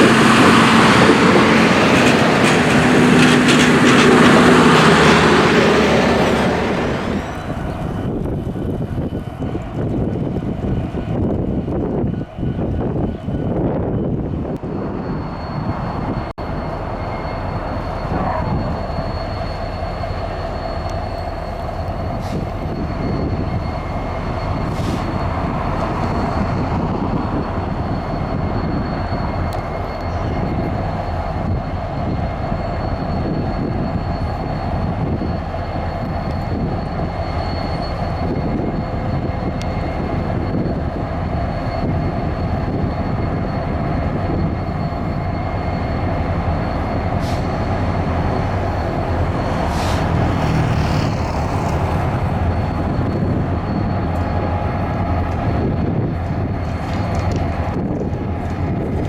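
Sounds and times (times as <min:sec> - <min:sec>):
train rumbling on rails: 0:00.0 - 0:59.0.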